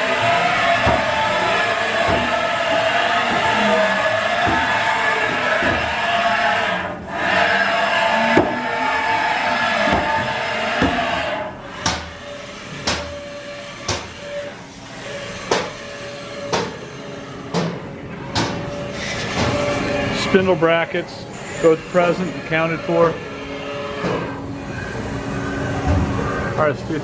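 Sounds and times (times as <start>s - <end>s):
machining center humming and whining: 0.0s - 27.0s
sharp knocks: 0.4s - 6.2s, 9.9s - 11.1s, 11.8s - 12.2s, 12.8s - 13.2s, 13.9s - 14.2s, 15.4s - 15.8s, 16.5s - 16.8s.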